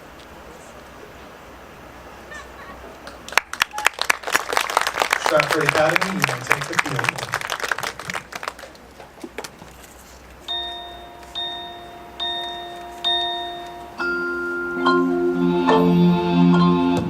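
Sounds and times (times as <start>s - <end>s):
held low chord: 10.5s - 17.0s
mallet percussion bell chords: 10.5s - 17.0s.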